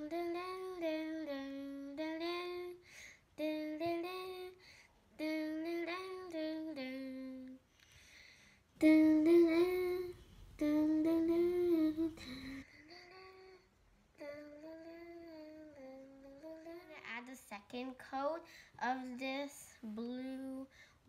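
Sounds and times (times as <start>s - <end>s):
child humming a tune: 8.8s - 17.0s.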